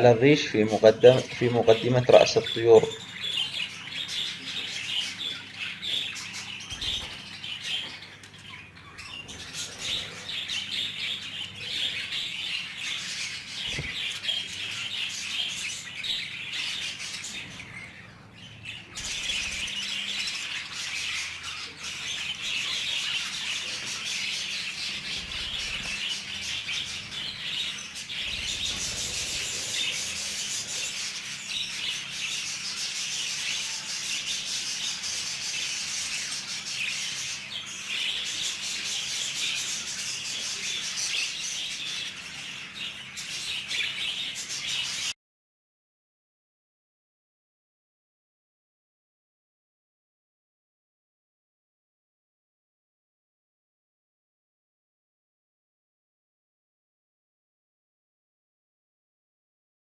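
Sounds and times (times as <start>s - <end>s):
budgerigars chattering and chirping: 0.0s - 45.1s.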